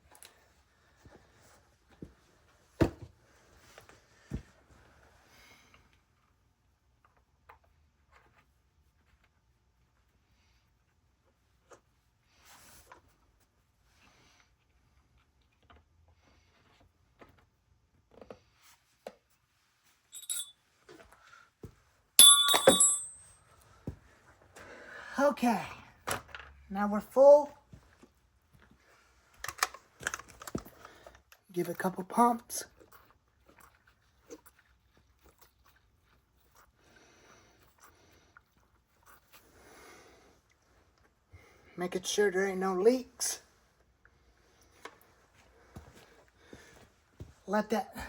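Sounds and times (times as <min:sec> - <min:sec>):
small clicks and rustles of handling: 0:05.9 - 0:09.9, 0:14.5 - 0:21.1, 0:27.8 - 0:31.4
metallic clink: 0:20.2 - 0:20.6, 0:22.2 - 0:23.4
loud ringing metallic clang: 0:22.2 - 0:23.2
handling clicks and knocks: 0:22.2 - 0:23.3.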